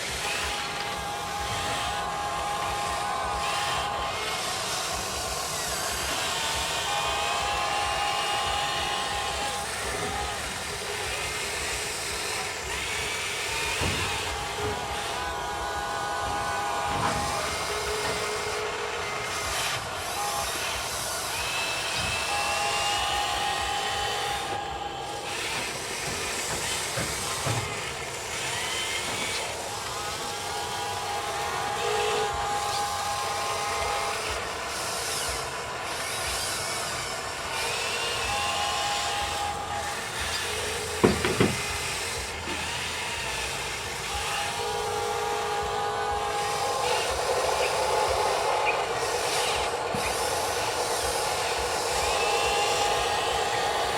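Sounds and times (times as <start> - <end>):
small electric motors whining: 0.0 - 53.9
sharp knock: 41.0 - 41.7.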